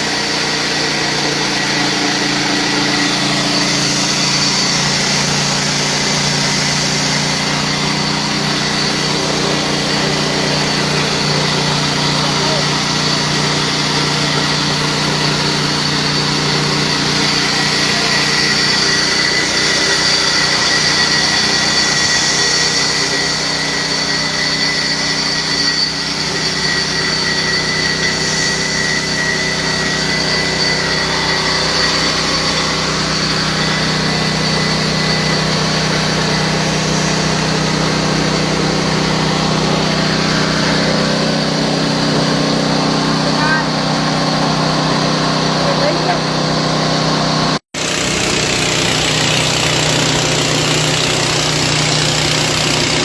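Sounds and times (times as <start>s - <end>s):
grinding mill high whine: 0.0s - 38.0s, 47.7s - 53.0s.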